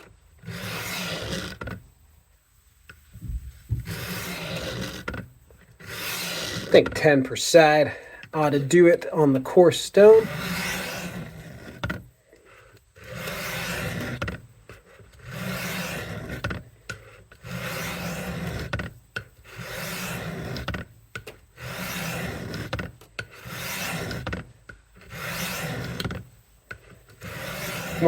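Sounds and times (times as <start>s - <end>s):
knife rasping on sharpening stone: 5.8s - 6.7s, 10.0s - 11.8s, 12.5s - 14.2s, 15.2s - 18.7s, 19.5s - 20.7s, 21.6s - 22.7s, 23.3s - 24.2s, 25.0s - 26.0s, 27.2s - 28.0s.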